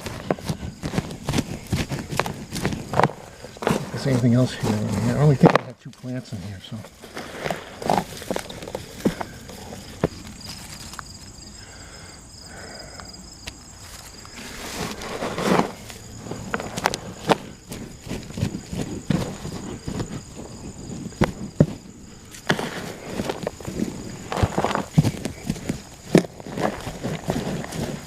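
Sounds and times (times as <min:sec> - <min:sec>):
knocks and scrapes on plastic: 0:00.0 - 0:05.7, 0:14.6 - 0:28.0
hands rummaging through compost: 0:00.0 - 0:11.5, 0:13.8 - 0:28.0.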